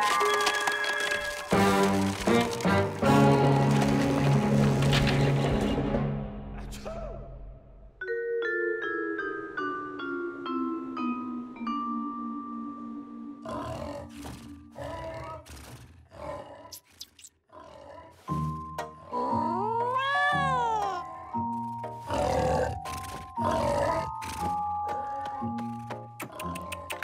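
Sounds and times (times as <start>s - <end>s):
growling character noises: 13.4s - 18.4s.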